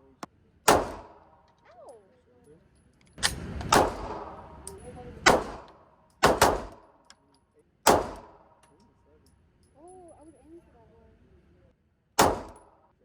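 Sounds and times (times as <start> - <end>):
pistol shots: 0.7 - 1.5, 3.2 - 4.6, 5.2 - 7.0, 7.8 - 8.6, 12.2 - 12.8.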